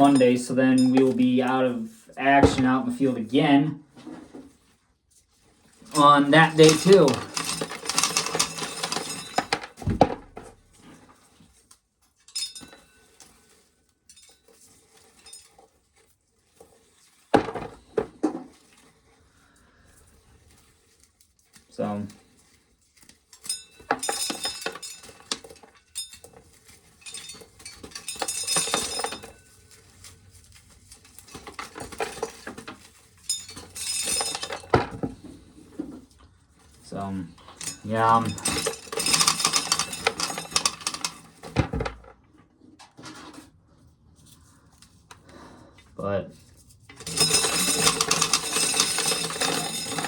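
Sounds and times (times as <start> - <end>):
corn kernels rattling: 5.7 - 9.7, 26.8 - 29.4, 36.9 - 41.6, 47.0 - 50.0.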